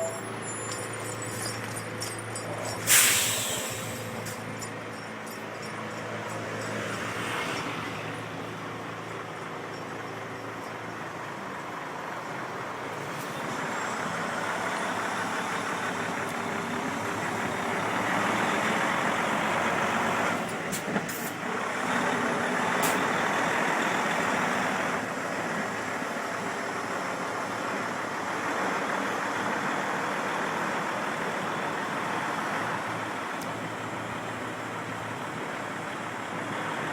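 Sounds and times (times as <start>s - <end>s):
truck diesel engine running: 8.1s - 36.9s.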